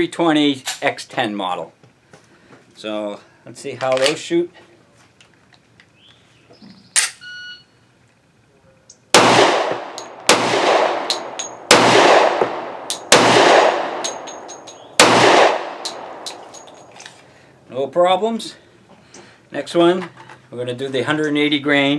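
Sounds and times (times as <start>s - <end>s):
pistol shots with echo: 9.2s - 16.9s
sharp metallic clack: 9.9s - 10.4s, 11.0s - 17.2s.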